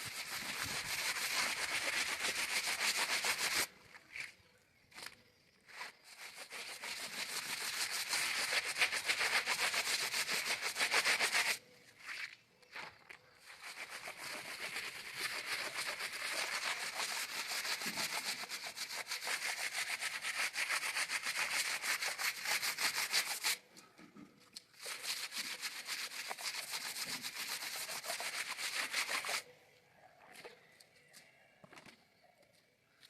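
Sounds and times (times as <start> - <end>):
scrubbing fabric by hand: 0.0 - 3.7, 5.7 - 12.3, 13.5 - 23.6, 24.7 - 29.5.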